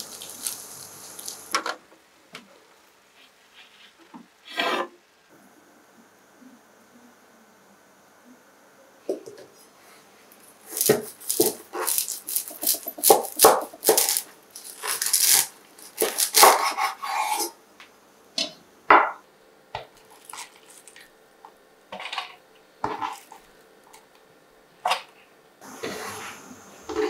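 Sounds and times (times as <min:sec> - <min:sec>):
rustling handling noises: 0:09.6 - 0:16.4.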